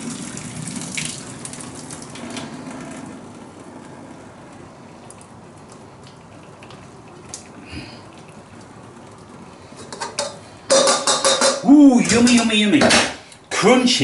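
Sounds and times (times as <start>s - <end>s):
water draining and trickling: 0.0s - 3.1s
kitchen utensils clicking: 9.8s - 13.1s.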